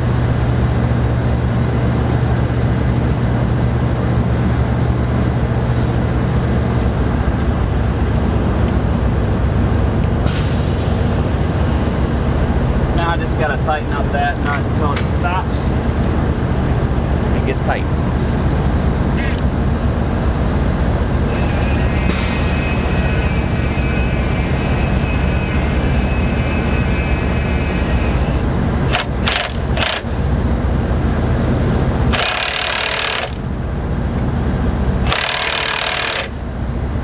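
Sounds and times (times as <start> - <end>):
low engine-like hum: 0.0 - 37.0
thin high whine: 19.1 - 19.6, 21.0 - 29.0
sharp clicks: 28.9 - 30.0, 35.1 - 36.3
power tool bursts: 28.9 - 30.1, 32.1 - 33.4, 35.1 - 36.3.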